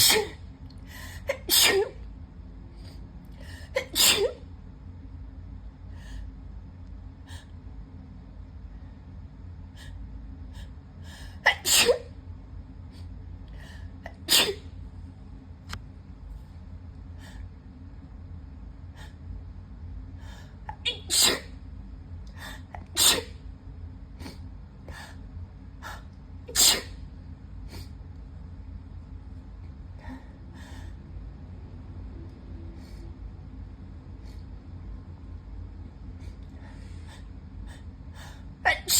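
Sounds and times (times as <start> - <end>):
person sneezing loudly: 1.3 - 2.0, 3.8 - 4.4, 11.5 - 12.1, 14.2 - 14.6, 20.8 - 21.5, 26.5 - 27.0
quiet breathing: 12.8 - 14.1, 20.0 - 20.7, 29.9 - 31.2, 36.1 - 38.6.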